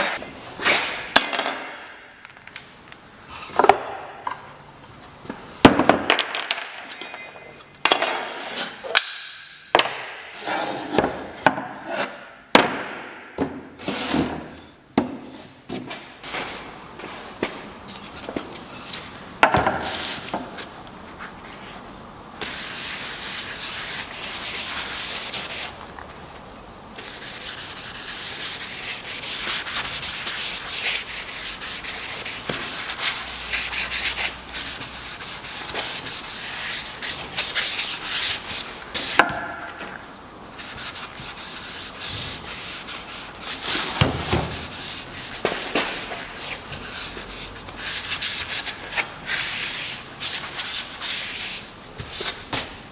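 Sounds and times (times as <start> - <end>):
sandpaper rubbing on wood: 22.4 - 25.8, 27.0 - 39.2, 40.6 - 52.7.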